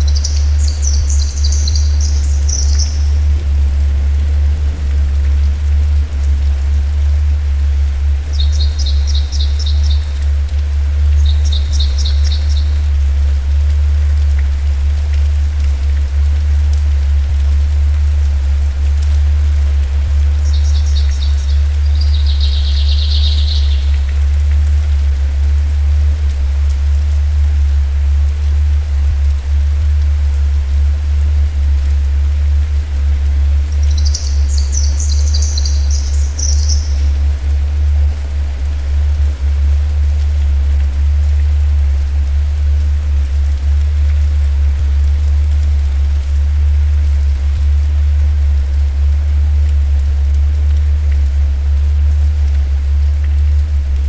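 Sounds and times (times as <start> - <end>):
bird chirping rapidly: 0.0 - 3.1, 11.2 - 12.8, 20.4 - 24.0, 33.8 - 37.2
low rumble: 0.0 - 54.0
rain pattering: 0.0 - 54.0.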